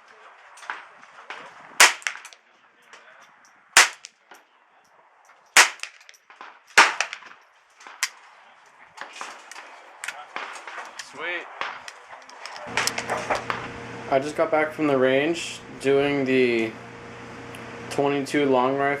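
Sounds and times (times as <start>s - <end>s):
rifle shots cracking: 0.6s - 2.4s, 3.8s - 4.3s, 5.6s - 8.3s, 9.0s - 13.6s
faint distant gunshots: 0.6s - 2.5s, 3.8s - 4.3s, 5.6s - 12.8s.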